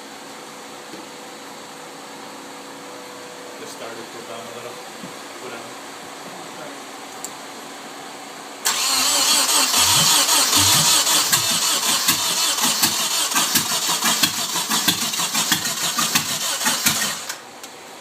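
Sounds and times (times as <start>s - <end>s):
engine cranking by starter: 8.6s - 17.4s.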